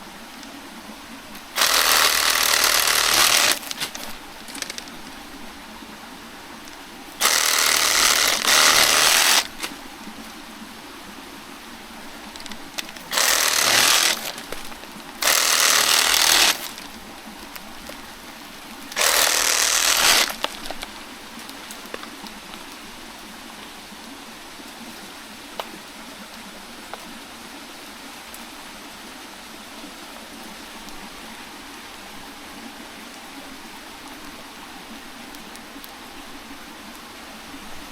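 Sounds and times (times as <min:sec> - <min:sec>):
reciprocating saw cutting plant stem: 0:01.5 - 0:05.0, 0:07.2 - 0:09.7, 0:12.4 - 0:16.9, 0:18.9 - 0:20.8.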